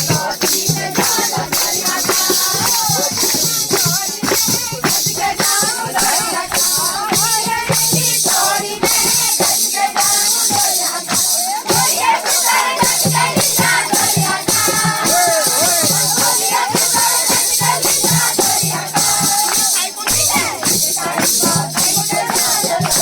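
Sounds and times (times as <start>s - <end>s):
shaker-like percussion: 0.0s - 23.0s
person singing: 11.3s - 23.0s.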